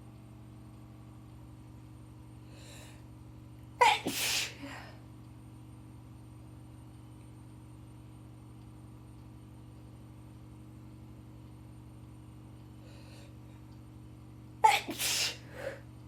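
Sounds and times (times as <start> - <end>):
woman sneezing: 3.8 - 4.8, 14.6 - 15.8
faint breath: 12.8 - 13.4.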